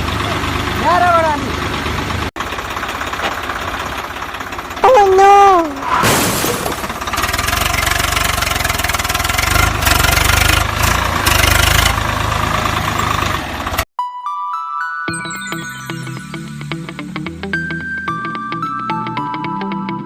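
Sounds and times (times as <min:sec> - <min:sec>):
tractor engine running: 0:00.0 - 0:13.9.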